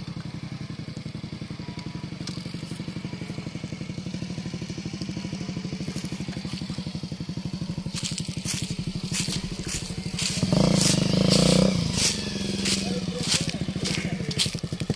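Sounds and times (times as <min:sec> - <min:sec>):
motorcycle engine running: 0:00.0 - 0:14.9
tyres crunching over gravel: 0:05.4 - 0:14.9.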